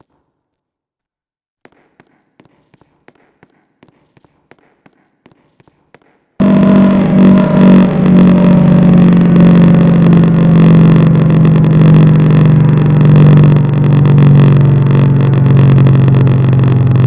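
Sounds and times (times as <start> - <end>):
siren winding down: 6.4 - 17.0.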